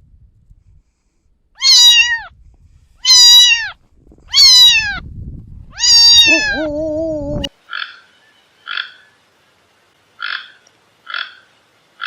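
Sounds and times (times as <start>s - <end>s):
cat meowing: 1.6s - 2.3s, 3.0s - 5.0s, 5.8s - 7.5s.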